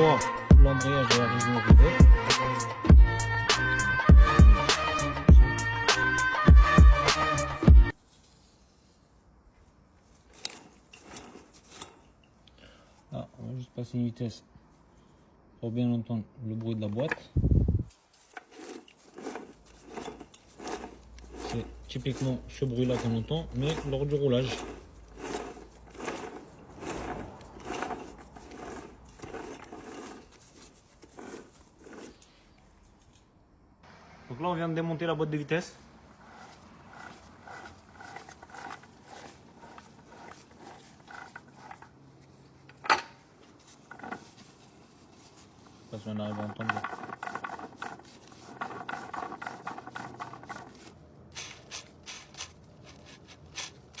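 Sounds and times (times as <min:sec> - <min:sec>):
gearbox grinding rumble: 0:17.4 - 0:32.2, 0:36.0 - 0:42.0, 0:43.7 - 0:50.9
gearbox bearing clicking: 0:36.2 - 0:42.0.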